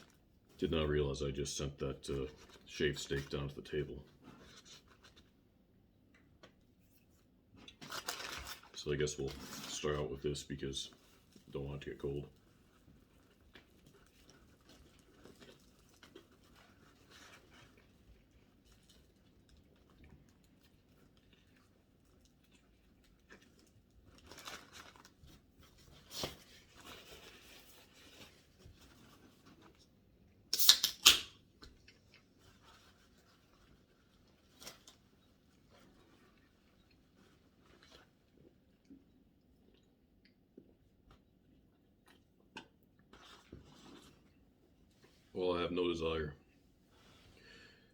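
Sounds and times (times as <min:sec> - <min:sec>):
paper wrapper rustling: 0:07.7 - 0:09.8, 0:23.3 - 0:29.8.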